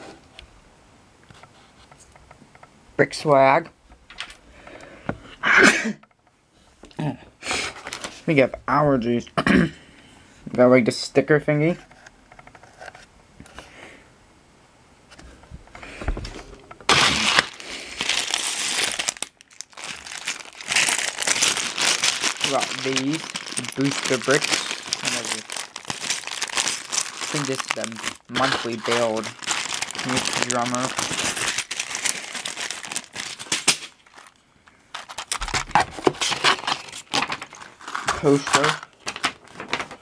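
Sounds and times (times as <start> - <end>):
plastic packaging crinkling: 7.8 - 8.2, 16.3 - 40.0.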